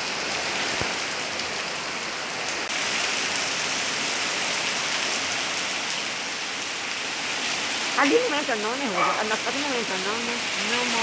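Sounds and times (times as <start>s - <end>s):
heavy rain pouring: 0.0s - 11.0s.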